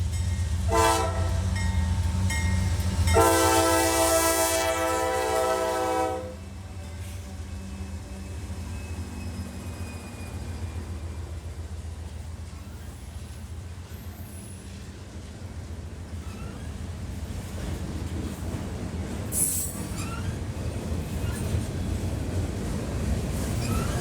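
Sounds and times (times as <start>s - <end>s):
passing train rumble: 0.0s - 24.0s
train horn: 0.7s - 1.6s, 3.1s - 7.7s.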